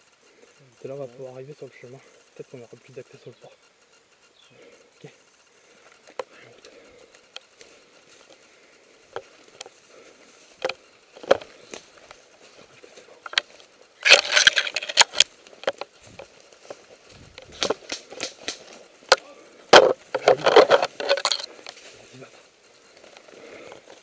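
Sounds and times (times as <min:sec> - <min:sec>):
undergrowth and twigs rustling: 0:00.0 - 0:24.0
footsteps through brush: 0:05.5 - 0:24.0.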